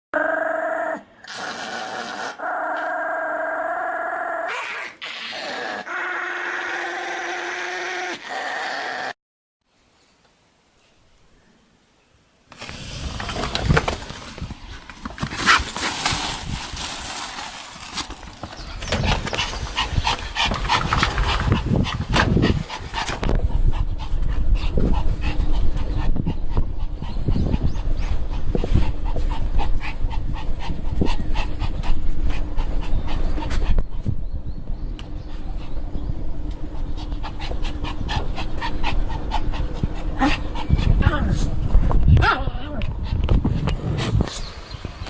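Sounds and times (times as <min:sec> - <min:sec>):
dog panting: 0:36.6 - 0:41.0.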